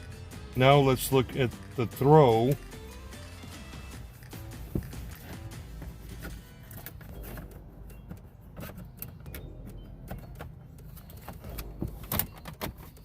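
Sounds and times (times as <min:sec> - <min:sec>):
gear shifter clicks and knocks: 0:04.1 - 0:13.0.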